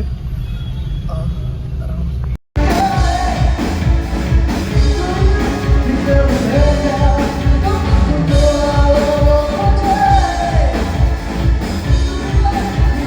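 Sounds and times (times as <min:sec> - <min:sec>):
song with singing over beat: 0:02.6 - 0:13.0.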